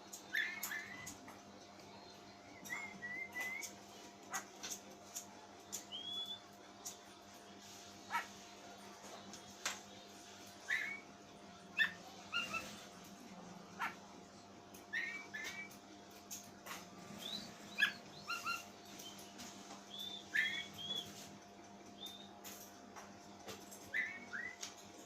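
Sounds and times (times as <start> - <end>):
bird whistled chirps: 2.7 - 3.7, 5.9 - 6.5, 17.2 - 19.2, 19.9 - 21.2.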